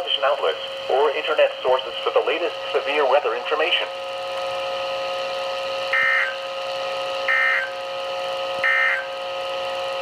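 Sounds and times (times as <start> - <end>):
buzzy data bursts: 5.9 - 9.4.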